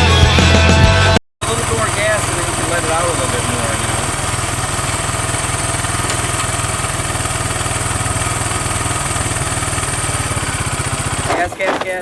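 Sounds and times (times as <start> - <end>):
atv engine running: 1.4 - 12.0.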